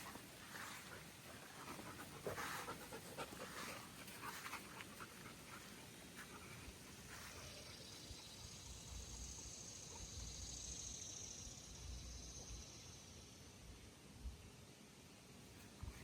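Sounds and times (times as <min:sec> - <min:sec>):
dog panting: 0:00.0 - 0:08.2.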